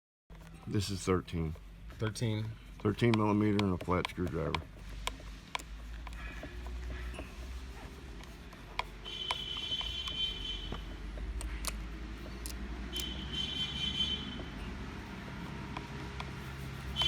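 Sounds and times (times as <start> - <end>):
small metal clicks: 11.1 - 13.2.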